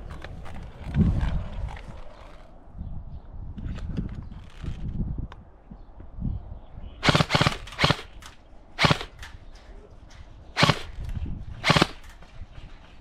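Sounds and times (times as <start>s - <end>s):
airsoft gun shots: 7.0s - 9.4s, 10.6s - 12.2s.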